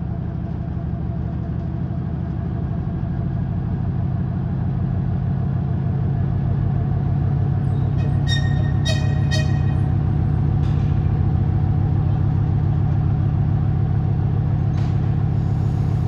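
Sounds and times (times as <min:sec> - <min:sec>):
diesel locomotive engine throbbing: 0:00.0 - 0:16.0
high-pitched squeaks: 0:07.8 - 0:09.9.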